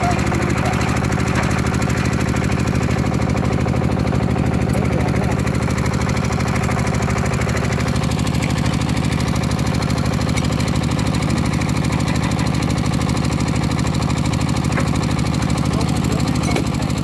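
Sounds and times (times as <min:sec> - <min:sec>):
small engine running: 0:00.0 - 0:17.0.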